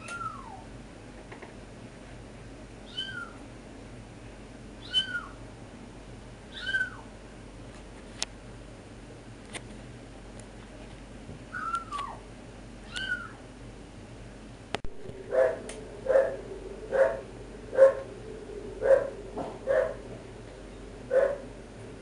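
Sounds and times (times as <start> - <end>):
dog whining: 0.0 - 0.7, 11.5 - 12.2, 15.2 - 18.1, 18.8 - 20.1
dog barking: 15.3 - 18.1, 18.8 - 20.0, 21.1 - 21.4.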